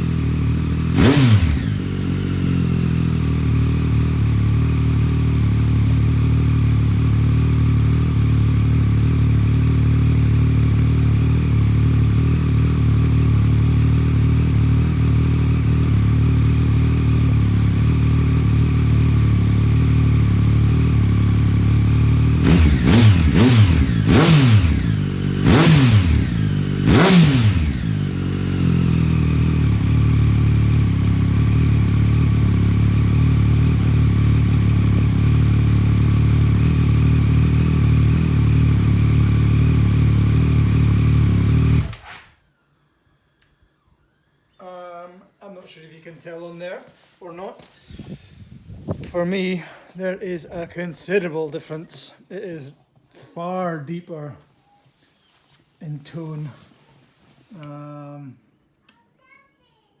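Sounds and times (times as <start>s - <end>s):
motorcycle engine idling and revving: 0.0s - 44.4s, 47.9s - 49.7s.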